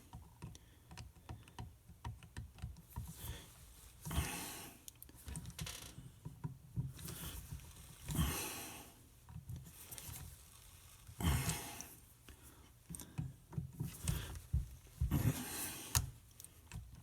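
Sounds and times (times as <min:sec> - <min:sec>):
small clicks and taps: 0:00.1 - 0:03.3.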